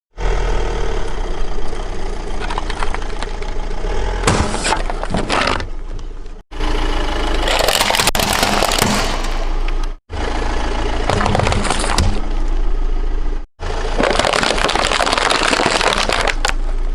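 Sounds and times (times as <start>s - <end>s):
car engine running: 0.1s - 16.9s
tyre crushing crunchy objects: 2.4s - 6.3s, 7.4s - 9.9s, 11.0s - 12.3s, 13.6s - 16.8s.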